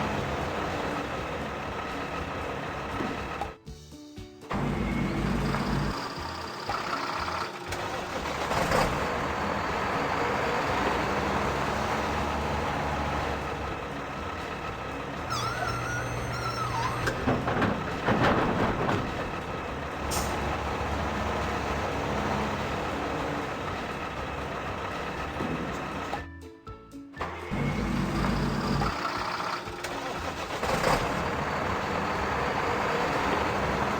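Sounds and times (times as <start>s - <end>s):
truck engine running: 0.0s - 3.9s, 4.5s - 26.4s, 27.2s - 33.9s
wavering high tone: 15.3s - 17.1s.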